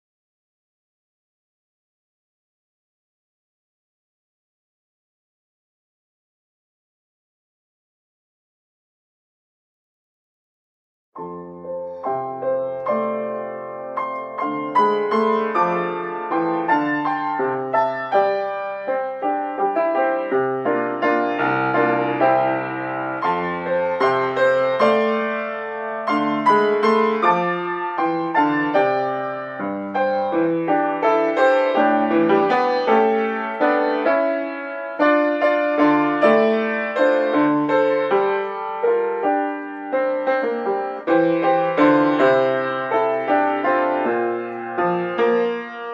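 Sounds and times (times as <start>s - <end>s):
solo classical piano: 11.2s - 45.9s.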